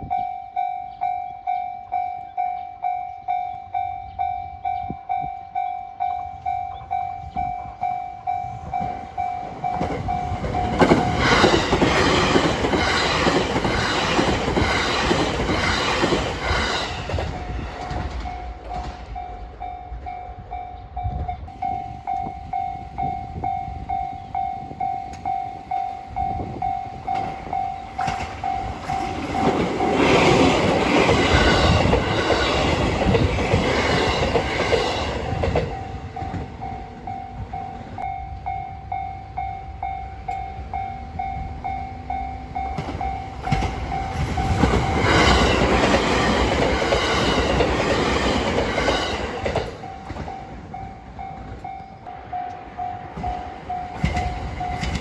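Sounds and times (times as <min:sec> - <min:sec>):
level-crossing warning bell: 0:00.0 - 0:55.0
train wheels clattering on rails: 0:06.4 - 0:20.6, 0:21.4 - 0:38.1, 0:42.1 - 0:55.0.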